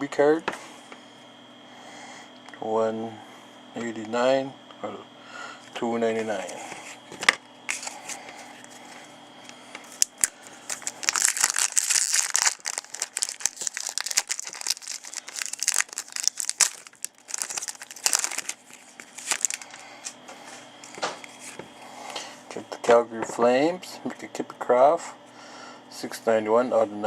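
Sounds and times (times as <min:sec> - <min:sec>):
wrapper tearing and crinkling: 0:09.9 - 0:20.2.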